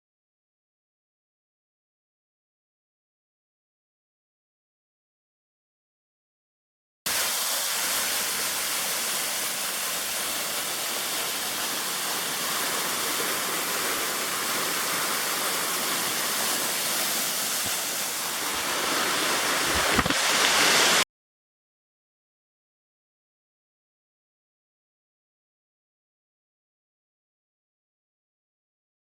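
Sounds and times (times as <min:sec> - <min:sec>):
river water rushing: 0:08.2 - 0:21.0.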